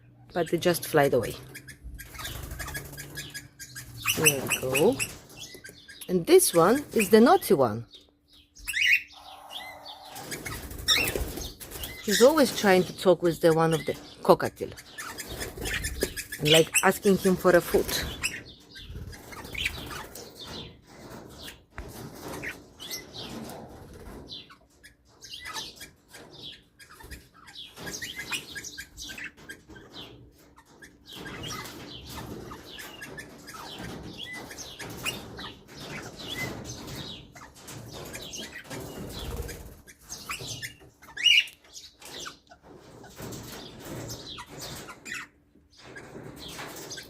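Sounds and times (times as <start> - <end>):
parrots chirping and chattering: 0.0 - 47.0.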